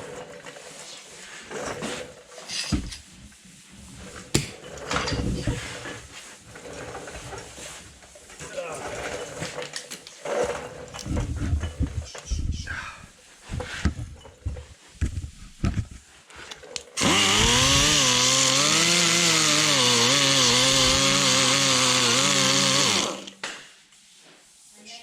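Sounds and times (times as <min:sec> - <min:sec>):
handling knocks and clatter: 0:04.2 - 0:05.9
electric grinder on metal: 0:17.0 - 0:23.4.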